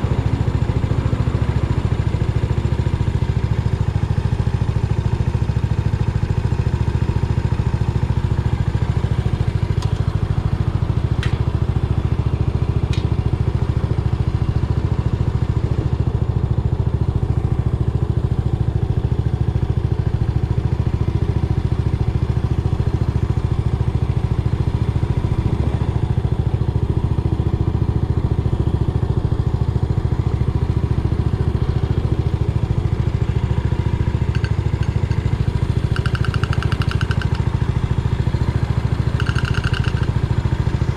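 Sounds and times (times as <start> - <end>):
motorcycle engine running: 0.0 - 40.9
faint clicks: 34.3 - 37.5, 39.1 - 40.2.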